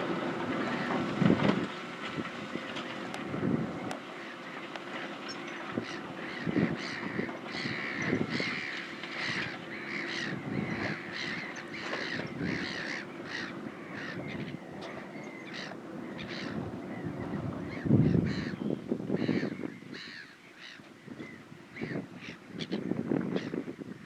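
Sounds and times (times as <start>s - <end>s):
tractor engine humming: 0.0s - 19.0s
crows cawing: 5.7s - 22.4s.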